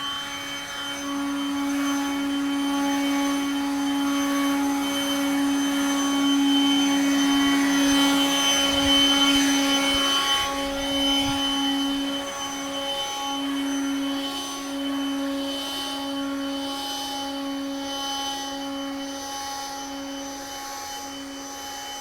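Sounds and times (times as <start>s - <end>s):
snowblower motor whine: 0.0s - 22.0s.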